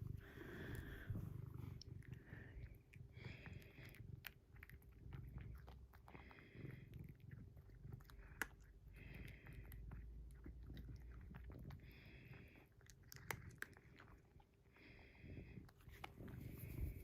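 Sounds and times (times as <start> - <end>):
soft breathy sound: 0.0 - 4.2, 11.7 - 12.8, 14.6 - 17.0.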